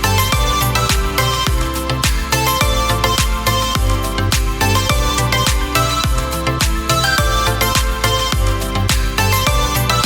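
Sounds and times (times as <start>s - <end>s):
upbeat background music: 0.0s - 10.0s
punchy kick drum beat: 0.3s - 9.9s.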